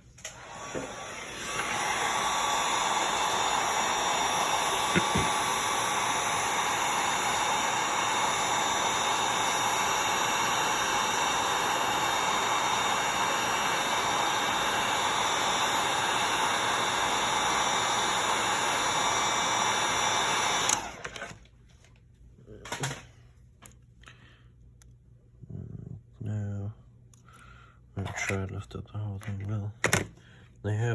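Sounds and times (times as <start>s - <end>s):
heat gun blowing hot air: 0.2s - 21.4s.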